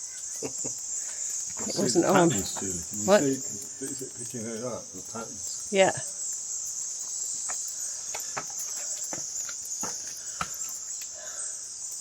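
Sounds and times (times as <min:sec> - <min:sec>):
insects chorus: 0:00.0 - 0:12.0.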